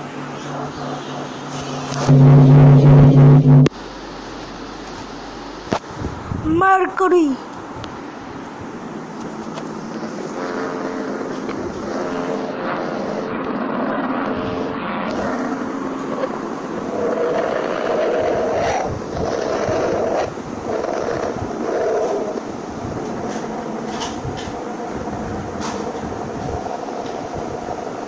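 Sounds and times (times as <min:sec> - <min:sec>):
faint held tones: 0:00.0 - 0:03.8
rushing rumbling drone: 0:00.0 - 0:06.5, 0:07.6 - 0:28.0.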